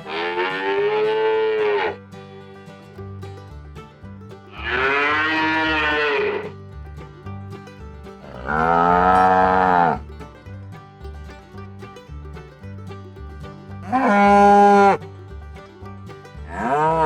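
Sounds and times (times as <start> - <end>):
cow mooing: 0.0 - 2.0, 4.6 - 6.5, 8.2 - 10.0, 16.5 - 17.0.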